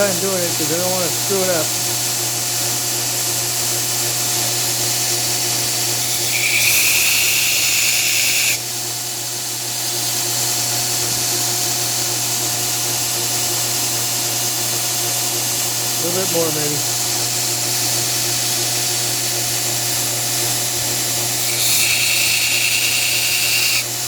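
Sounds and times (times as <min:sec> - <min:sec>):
high-pitched grinding whine: 0:00.0 - 0:24.0
belt grinder motor hum: 0:04.6 - 0:08.6, 0:20.2 - 0:24.0.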